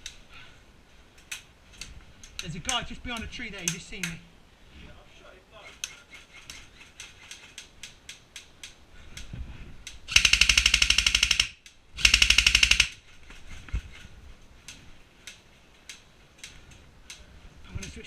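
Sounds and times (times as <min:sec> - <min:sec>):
airsoft rifle full-auto bursts: 0:10.1 - 0:13.0.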